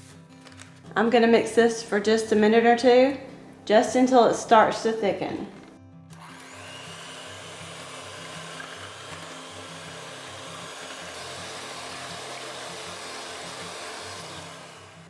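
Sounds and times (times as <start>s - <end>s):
electric mixer running: 5.3s - 15.0s.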